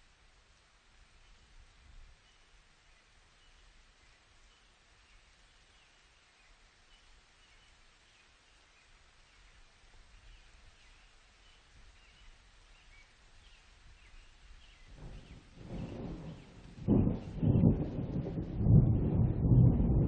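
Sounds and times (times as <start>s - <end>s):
soft outdoor hiss: 0.0s - 20.0s
distant bird chirps: 10.2s - 18.3s
thunder rumble: 14.8s - 20.0s.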